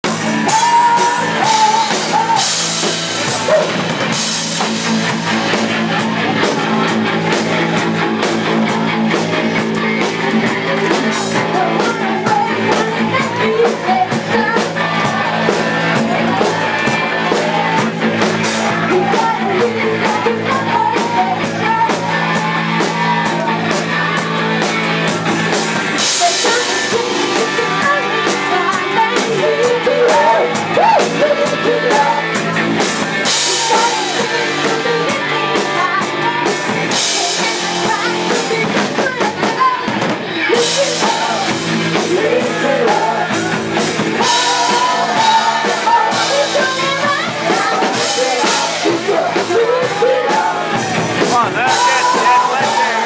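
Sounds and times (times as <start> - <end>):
person singing: 0.0 - 4.2, 5.0 - 24.8, 25.8 - 53.0
rock band playing live: 0.0 - 53.0.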